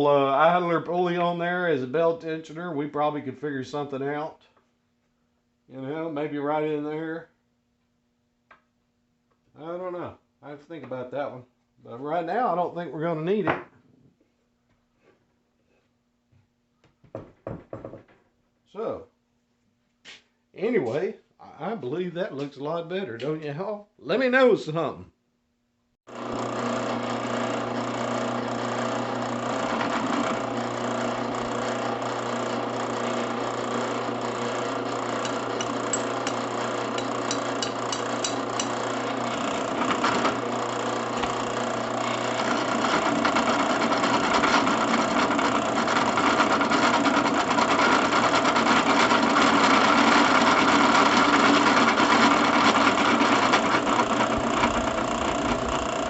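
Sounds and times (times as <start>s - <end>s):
drill press motor humming: 26.1s - 56.0s.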